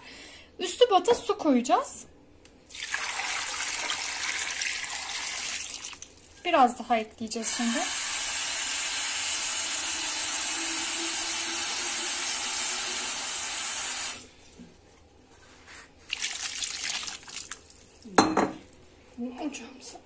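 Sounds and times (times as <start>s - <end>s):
tap water running into pot: 2.7s - 6.2s, 7.5s - 14.2s, 16.1s - 17.9s.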